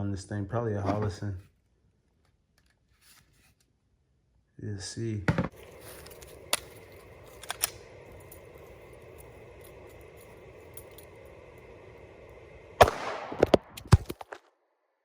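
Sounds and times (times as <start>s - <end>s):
sharp clicks: 6.2s - 8.3s.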